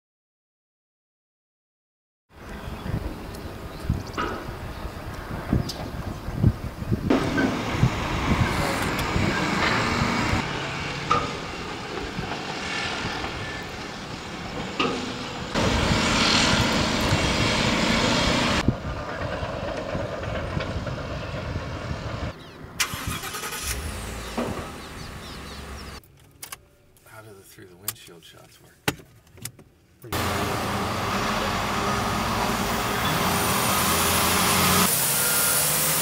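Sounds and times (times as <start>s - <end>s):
tyre and engine rumble: 2.4s - 27.2s, 29.1s - 36.0s
wind hiss: 2.8s - 10.5s, 15.4s - 19.0s, 20.2s - 26.0s.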